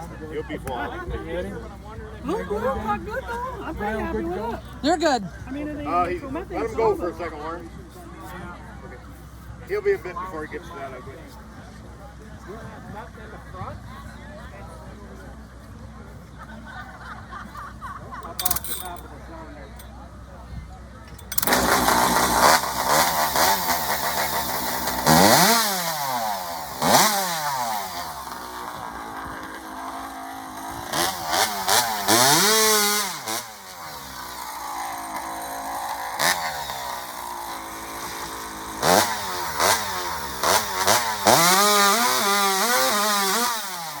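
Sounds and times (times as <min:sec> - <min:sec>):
chainsaw revving: 0:18.2 - 0:19.0, 0:21.2 - 0:44.0.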